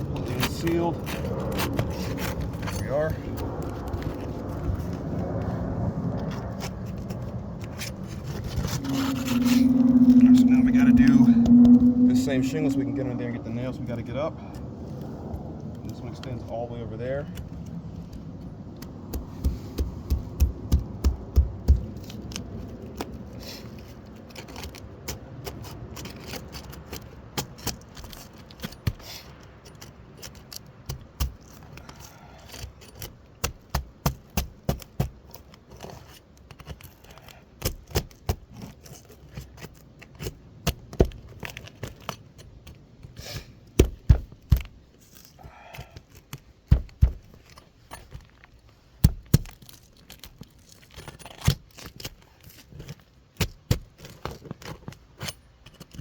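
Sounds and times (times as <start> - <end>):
low rumble: 1.9 - 16.0.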